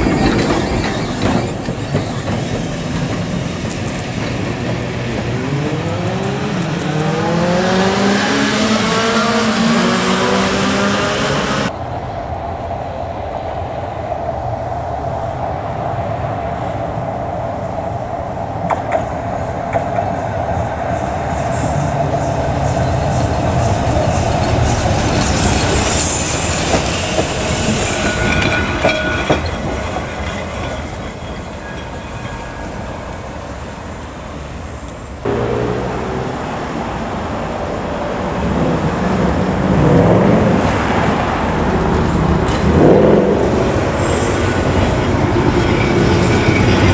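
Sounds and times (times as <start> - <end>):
wheels clicking over rail joints: 0.0 - 11.1, 18.4 - 46.9
hissing: 0.0 - 11.7
tram running on rails: 0.0 - 46.9.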